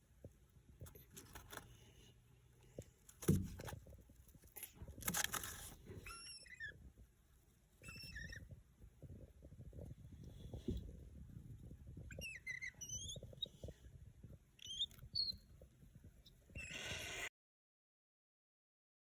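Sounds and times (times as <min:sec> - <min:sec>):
soft rustling and scratching: 0:00.0 - 0:16.6
bird chirping: 0:12.1 - 0:13.7, 0:14.6 - 0:15.6.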